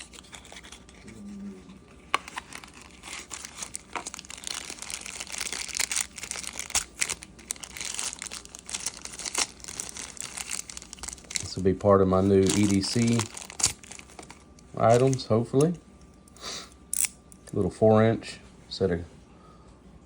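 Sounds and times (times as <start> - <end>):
packaging crinkling and tearing: 0.0 - 15.8.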